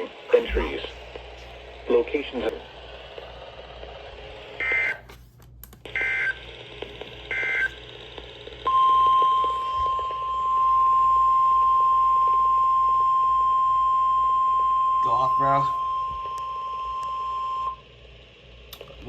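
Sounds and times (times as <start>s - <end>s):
steady warning alarm tone: 8.7s - 17.8s.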